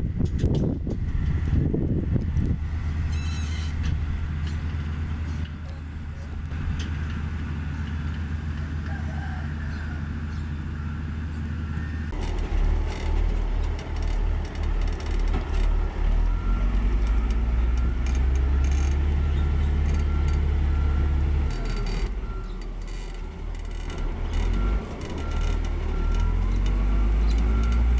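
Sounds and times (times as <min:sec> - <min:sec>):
grader diesel engine drone: 0:00.0 - 0:27.9
faint reversing alarm beeps: 0:03.1 - 0:03.8, 0:09.1 - 0:12.2, 0:15.0 - 0:27.9.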